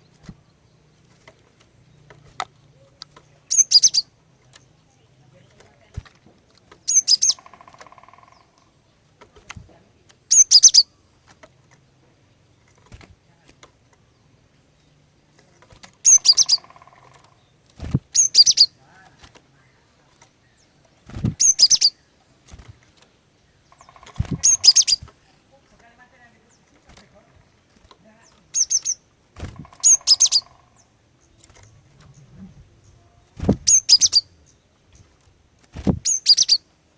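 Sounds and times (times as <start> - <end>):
bird sharp high chirps: 3.5 - 4.1, 6.8 - 8.7, 10.3 - 11.0, 16.0 - 18.8, 21.1 - 22.1, 23.5 - 25.1, 28.2 - 35.1, 36.0 - 36.7
bird buzzy rattle: 5.5 - 9.5, 15.6 - 19.4, 21.0 - 25.3, 26.7 - 32.6
dull low thumps: 31.7 - 33.8.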